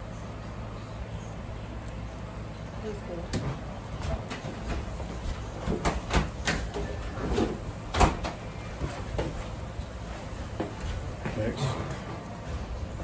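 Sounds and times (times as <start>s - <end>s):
kitchen knocks and clacks: 3.4s - 9.4s.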